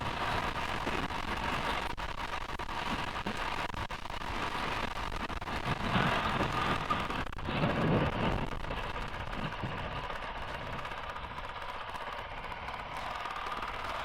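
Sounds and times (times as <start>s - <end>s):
motorcycle engine running: 5.5s - 14.0s.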